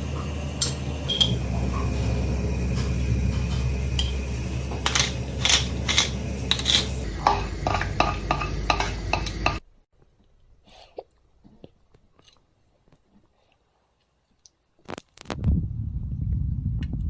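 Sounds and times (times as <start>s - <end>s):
steady low hum: 0.0s - 9.9s, 15.3s - 17.0s
dishes and utensils clinking: 0.6s - 2.0s, 2.7s - 9.6s.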